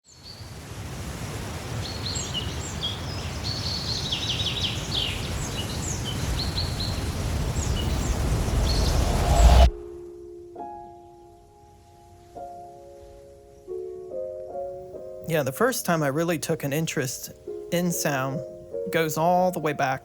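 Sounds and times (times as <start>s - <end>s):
steady rushing noise: 0.6s - 10.0s
birds chirping: 1.5s - 9.8s, 14.5s - 20.0s
low rumble: 6.8s - 10.0s.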